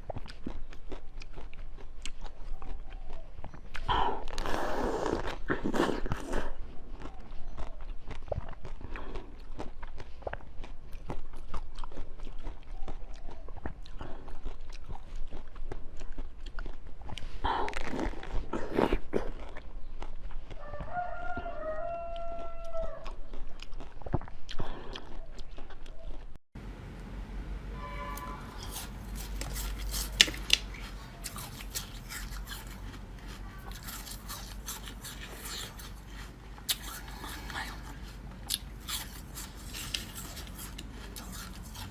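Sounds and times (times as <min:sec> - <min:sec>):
crunching and chewing frozen food: 0:00.0 - 0:26.4, 0:28.2 - 0:41.9
food packaging crinkling and tearing: 0:28.4 - 0:41.9.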